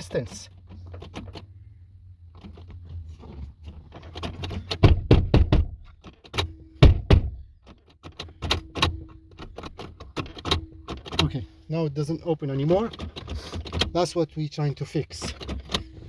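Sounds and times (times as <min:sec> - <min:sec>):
door latch knocking: 0:04.8 - 0:05.8.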